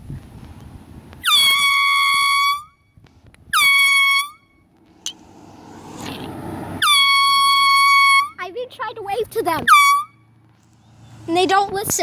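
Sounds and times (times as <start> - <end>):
party air horn blasts: 1.2 - 2.9, 3.5 - 4.6, 6.8 - 8.5, 9.6 - 10.2.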